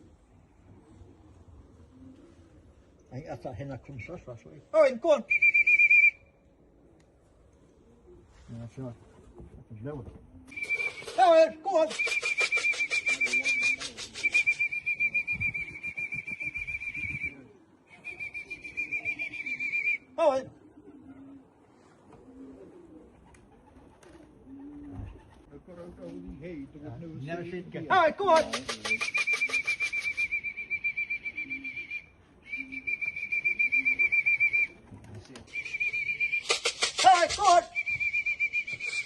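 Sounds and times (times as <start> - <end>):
trilling whistle calls: 5.2 - 6.4, 10.5 - 11.2, 11.9 - 20.2, 28.7 - 34.8, 35.5 - 39.0.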